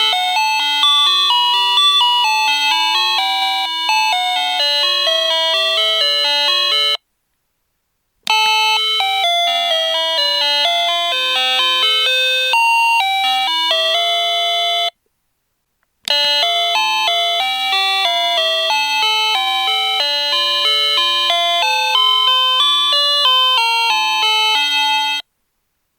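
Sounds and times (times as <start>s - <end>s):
electronic chime melody: 0.0s - 7.0s, 16.2s - 25.2s.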